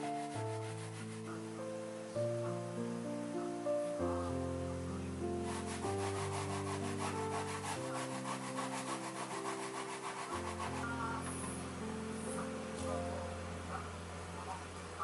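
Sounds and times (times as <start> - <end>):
soft background music: 0.0 - 15.0
radish grated on a grater: 5.4 - 11.6.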